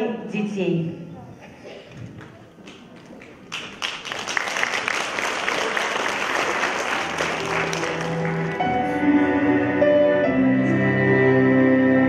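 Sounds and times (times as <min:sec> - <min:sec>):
audience applauding: 0:02.2 - 0:09.0
slow music of held notes: 0:07.0 - 0:12.0.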